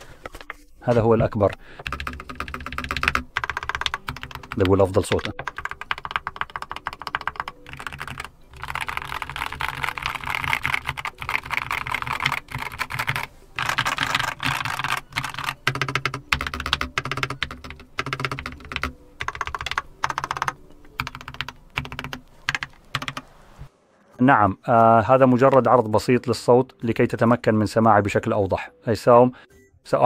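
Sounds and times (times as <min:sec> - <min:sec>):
mechanical keyboard typing: 0:01.4 - 0:23.2.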